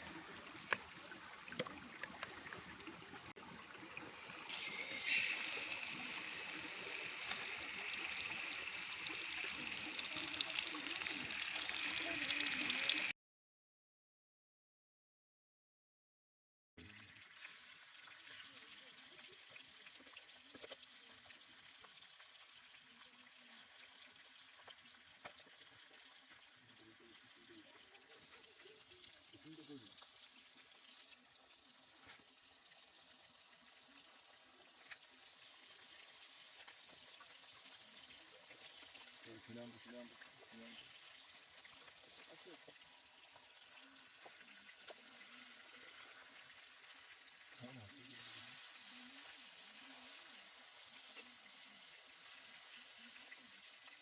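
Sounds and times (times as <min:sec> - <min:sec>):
stream water trickling: 0:00.0 - 0:13.1, 0:17.0 - 0:54.0
steady hiss: 0:04.5 - 0:13.1.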